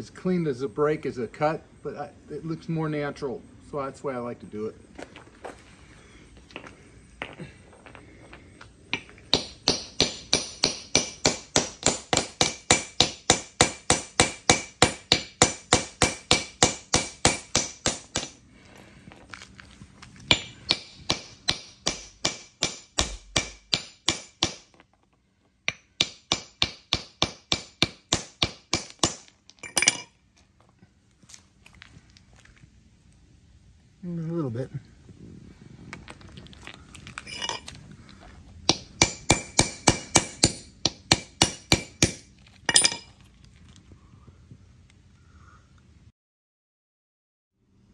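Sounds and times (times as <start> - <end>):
hammer tapping on rock: 8.9 - 18.4, 20.3 - 24.8, 25.7 - 29.2, 38.7 - 42.2.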